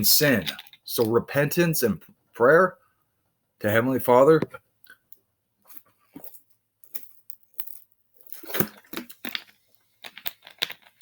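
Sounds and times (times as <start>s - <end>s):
soft crackles and rustles: 5.6s - 11.0s.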